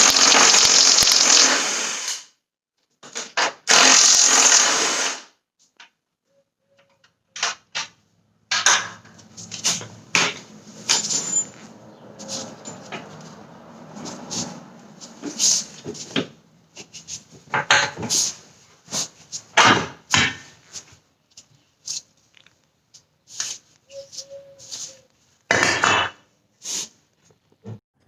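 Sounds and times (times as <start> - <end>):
tools and metal parts clinking: 8.5 - 13.4
short squeak: 23.9 - 25.1.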